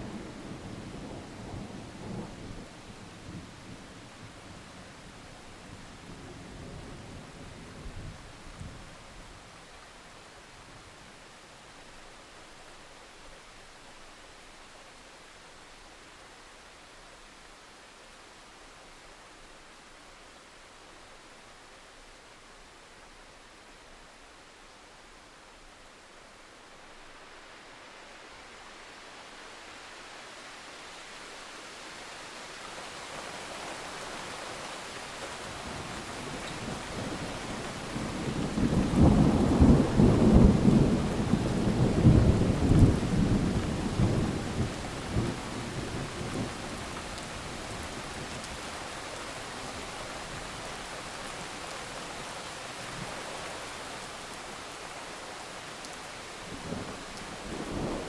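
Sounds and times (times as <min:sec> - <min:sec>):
steady rain hiss: 0:00.0 - 0:58.0
thunder rumbling: 0:36.6 - 0:46.9.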